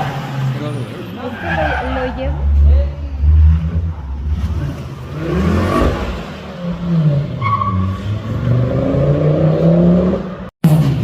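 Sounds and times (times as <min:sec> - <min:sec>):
car engine revving hard: 0:03.2 - 0:11.0.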